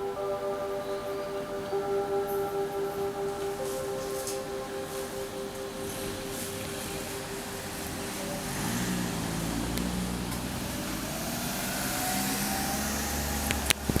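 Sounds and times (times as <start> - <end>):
faint rising whine: 0.0 - 13.9
vehicle engine hum: 6.9 - 14.0.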